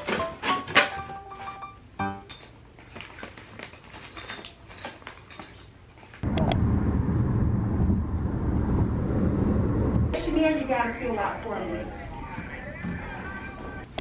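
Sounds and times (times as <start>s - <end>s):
steady low rumble: 6.2s - 13.9s
sharp clicks: 6.3s - 6.6s.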